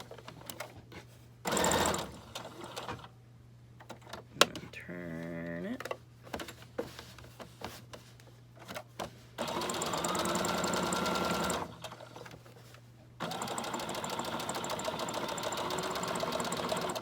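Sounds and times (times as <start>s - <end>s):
sewing machine stitching: 1.5s - 2.9s, 9.4s - 12.0s, 13.2s - 17.0s.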